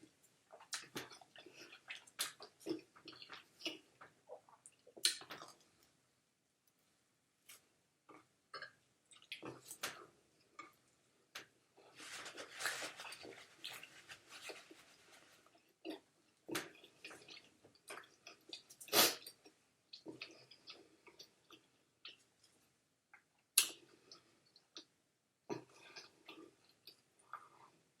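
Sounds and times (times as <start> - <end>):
person chewing food: 0.5 - 5.8, 8.1 - 10.9, 11.8 - 22.6, 25.5 - 27.8.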